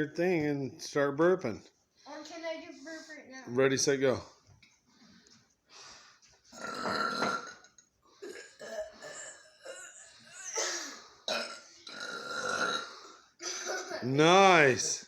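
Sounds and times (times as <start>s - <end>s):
person burping: 6.5s - 14.3s.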